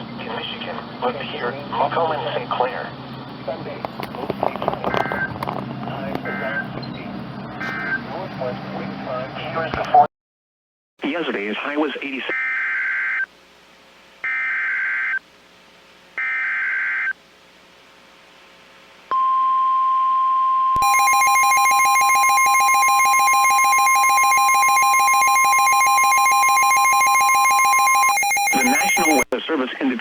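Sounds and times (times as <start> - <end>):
warning alarm tone: 19.1 - 29.3
harsh buzzing alert tone: 20.8 - 29.3
warbling data bursts: 20.8 - 29.3.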